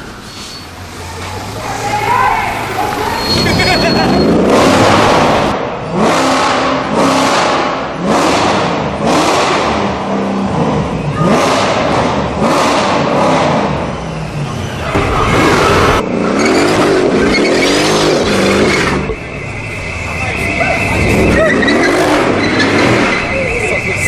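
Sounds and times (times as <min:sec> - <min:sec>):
faint voices: 0:00.9 - 0:04.5, 0:19.7 - 0:24.0
car engine revving hard: 0:03.3 - 0:19.1, 0:21.0 - 0:23.2.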